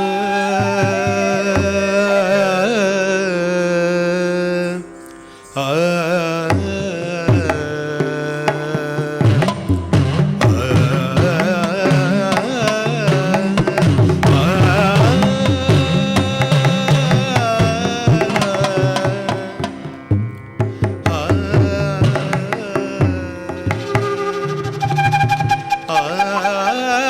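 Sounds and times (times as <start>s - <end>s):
ornamented sliding melody: 23.8s - 27.0s.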